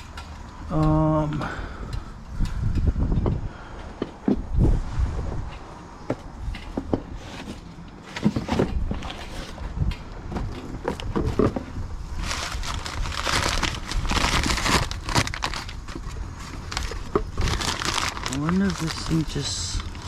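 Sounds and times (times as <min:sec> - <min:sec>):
clicks and knocks of parts: 0:00.0 - 0:04.5
crinkling and rustling: 0:06.1 - 0:20.0.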